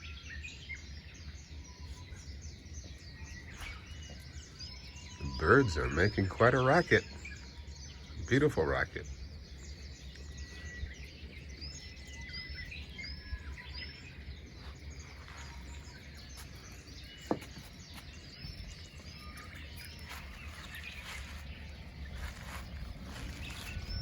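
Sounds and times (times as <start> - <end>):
songbirds chirping: 0.0 - 24.0
loud downward-sweeping bird call: 3.0 - 9.1.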